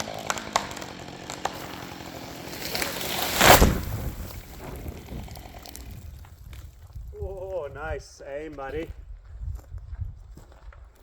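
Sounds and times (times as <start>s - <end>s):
wood snapping: 0.0s - 7.0s
tree falling and crashing: 0.0s - 7.6s.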